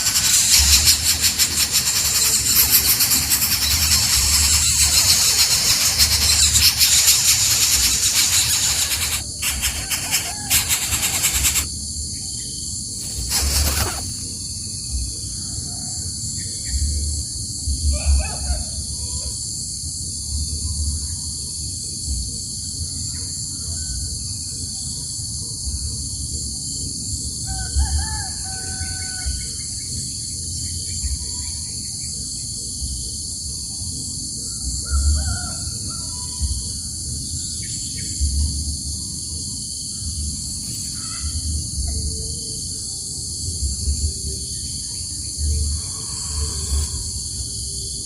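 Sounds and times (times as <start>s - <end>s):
faint bird calls: 0.0s - 11.7s
high-pitched insect chorus: 0.0s - 48.0s.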